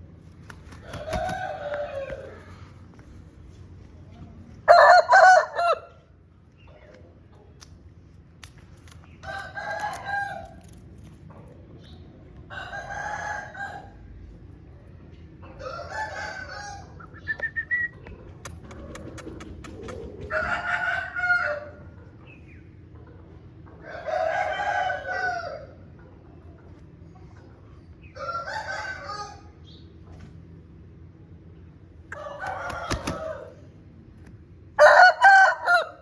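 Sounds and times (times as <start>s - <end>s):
roosters crowing: 0.7s - 2.7s, 4.6s - 6.1s, 9.2s - 10.7s, 12.5s - 14.1s, 15.4s - 17.0s, 20.1s - 22.0s, 23.8s - 26.0s, 28.0s - 29.6s, 32.1s - 33.8s, 34.7s - 36.0s.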